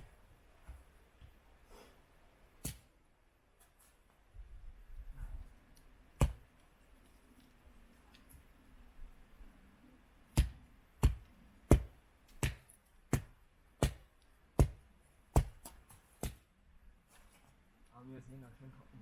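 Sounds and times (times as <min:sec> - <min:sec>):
wood chopping strikes: 0:02.6 - 0:02.8, 0:06.2 - 0:06.5, 0:10.3 - 0:14.8, 0:15.4 - 0:16.4.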